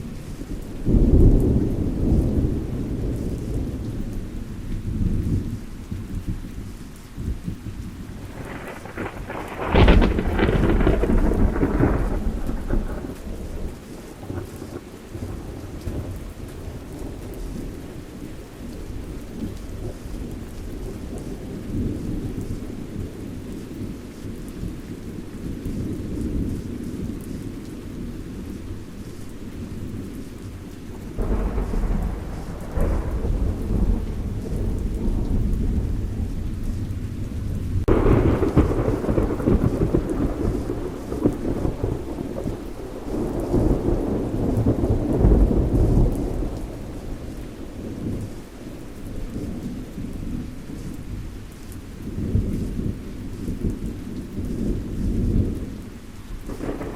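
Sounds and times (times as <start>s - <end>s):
low thunder rumbling: 0.0s - 51.4s, 52.0s - 56.9s
steady rain: 0.0s - 56.9s
sharp thunderclap: 8.2s - 14.7s, 31.1s - 48.3s, 56.5s - 56.9s.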